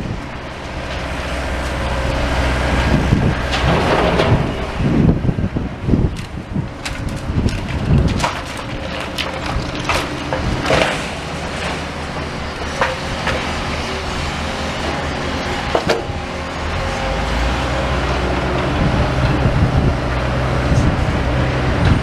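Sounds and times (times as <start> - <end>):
excavator engine running: 0.0 - 22.0
clanks of rubble and metal: 3.3 - 5.3, 6.0 - 16.3.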